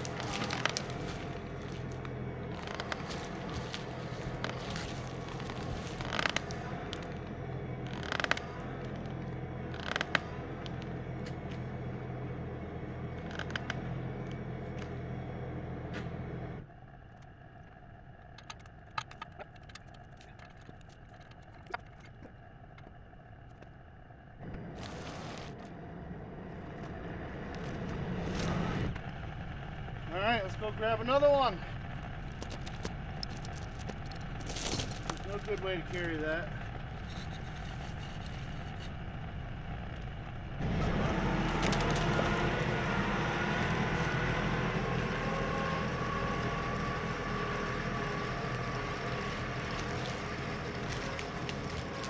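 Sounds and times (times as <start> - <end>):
logs clanking and scraping: 0.0 - 15.2, 18.2 - 23.0, 24.4 - 25.7, 31.9 - 39.1, 39.8 - 52.0
tractor engine running: 0.0 - 52.0.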